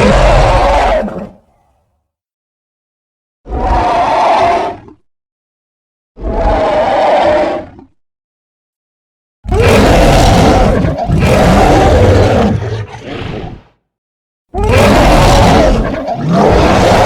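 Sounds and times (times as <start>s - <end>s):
monster roar: 0.0s - 1.4s, 3.5s - 5.0s, 6.2s - 7.8s, 9.5s - 13.7s, 14.6s - 17.0s.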